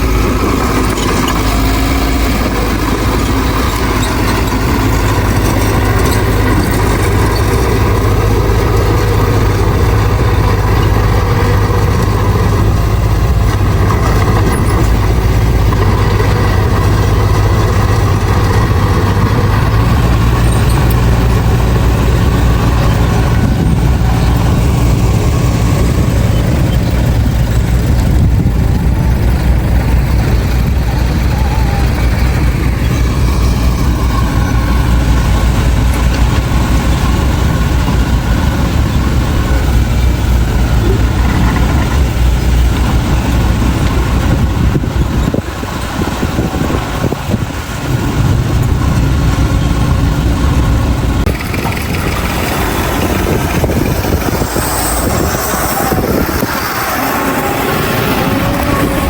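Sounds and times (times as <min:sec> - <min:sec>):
heavy diesel machinery rumbling: 0:00.0 - 0:59.0.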